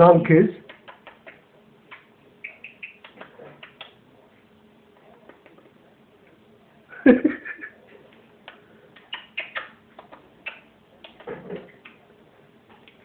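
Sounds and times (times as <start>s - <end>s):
parakeet clicks and chirps: 0.7s - 4.0s, 8.4s - 12.0s.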